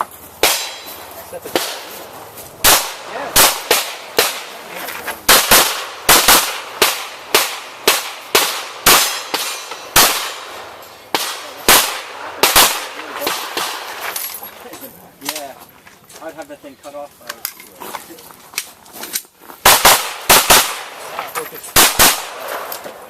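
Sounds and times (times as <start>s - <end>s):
pistol shots with echo: 0.4s - 2.0s, 2.6s - 4.7s, 5.3s - 13.9s, 19.6s - 21.1s, 21.7s - 22.8s.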